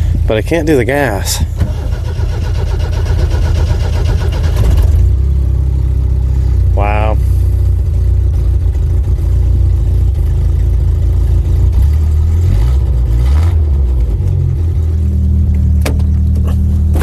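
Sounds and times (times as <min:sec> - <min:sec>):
pickup truck engine idling: 0:00.0 - 0:12.2.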